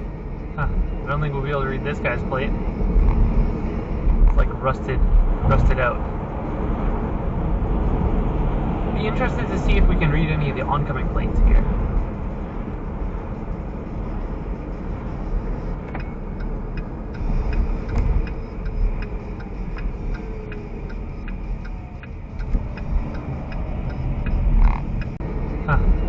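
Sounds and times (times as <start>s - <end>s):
car cabin road and engine rumble: 0.0s - 26.0s
regular ticking: 9.0s - 26.0s.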